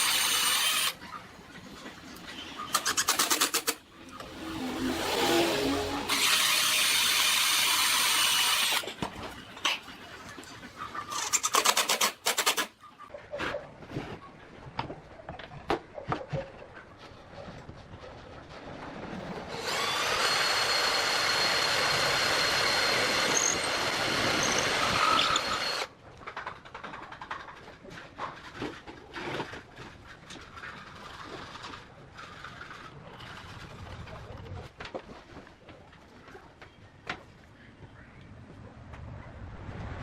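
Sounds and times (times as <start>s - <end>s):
power tool whining: 0.0s - 1.0s, 4.2s - 8.9s, 19.5s - 25.9s.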